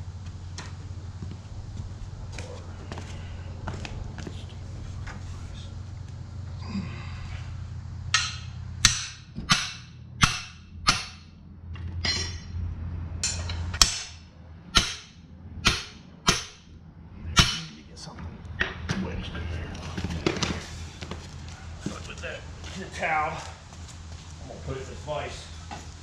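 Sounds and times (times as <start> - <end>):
steady low hum: 0.0 - 26.0
hammer striking metal: 8.1 - 11.4, 12.0 - 12.6, 13.2 - 16.7, 17.4 - 17.8.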